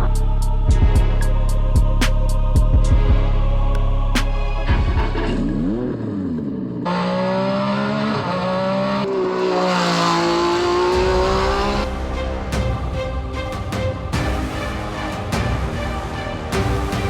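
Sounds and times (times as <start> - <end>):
race car engine revving: 2.9 - 12.0.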